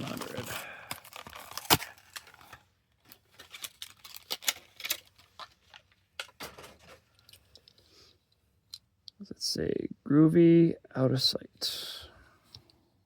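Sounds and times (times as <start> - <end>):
plastic blister packaging crackling: 0.0 - 6.9.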